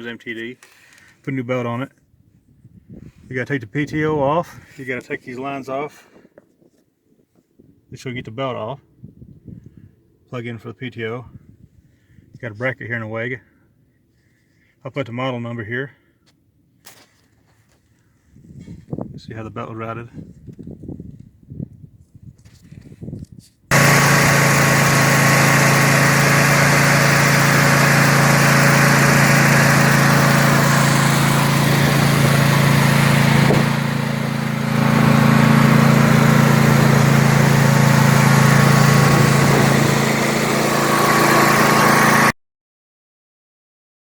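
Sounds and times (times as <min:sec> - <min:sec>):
riding mower engine running: 0:23.7 - 0:42.3.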